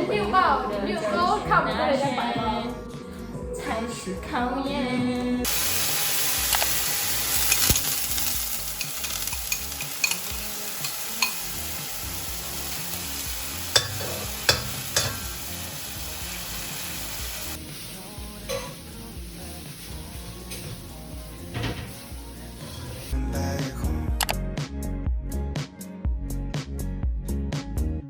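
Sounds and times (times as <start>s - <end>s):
food sizzling in a frying pan: 5.4s - 23.2s.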